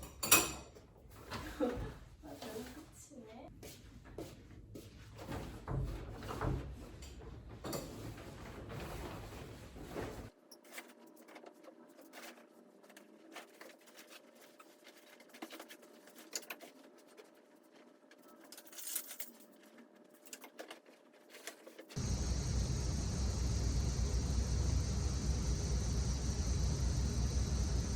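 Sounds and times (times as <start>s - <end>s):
small objects clicking and rustling: 13.3s - 22.0s
low background rumble: 22.0s - 27.9s.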